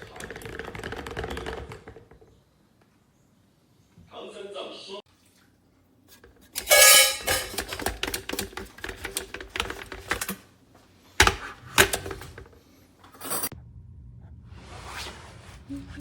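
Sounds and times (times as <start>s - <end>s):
hard objects clattering: 6.6s - 8.5s.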